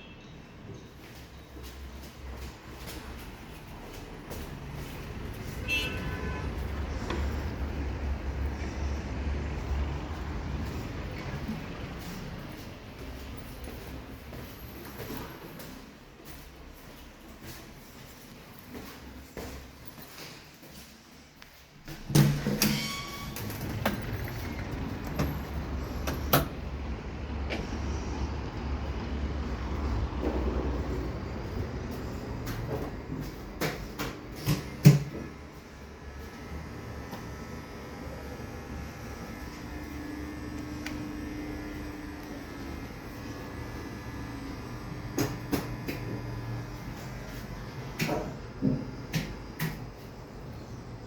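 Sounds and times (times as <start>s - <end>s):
elevator low rumble: 0.6s - 15.2s, 21.8s - 51.0s
elevator clunk: 21.9s - 26.6s.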